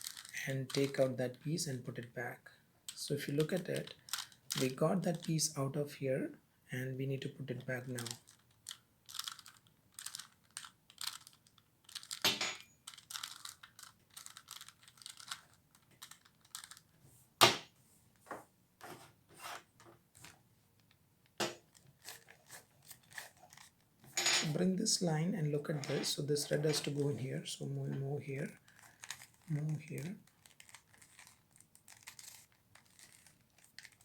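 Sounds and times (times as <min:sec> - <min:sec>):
puzzle cube clicks and rattles: 0:00.0 - 0:01.0, 0:02.9 - 0:05.4, 0:07.9 - 0:16.9, 0:21.7 - 0:23.8, 0:25.6 - 0:34.0.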